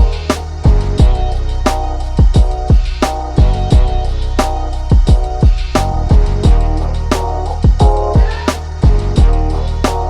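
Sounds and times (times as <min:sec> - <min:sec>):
kick drums: 0:00.0 - 0:01.3, 0:02.2 - 0:04.0, 0:04.9 - 0:06.7, 0:07.6 - 0:09.4
bass line: 0:00.0 - 0:10.0
sustained chords: 0:00.0 - 0:10.0.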